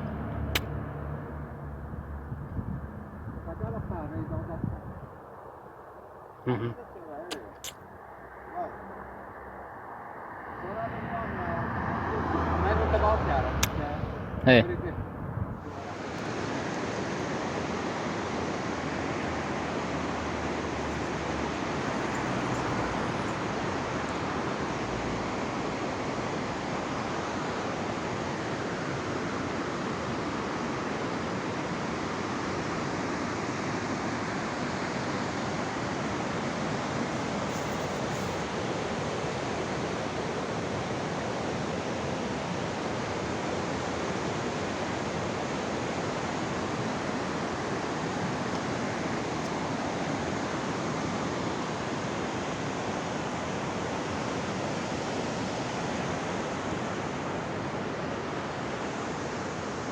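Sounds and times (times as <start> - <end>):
fast-flowing river water rushing: 15.6 - 59.9.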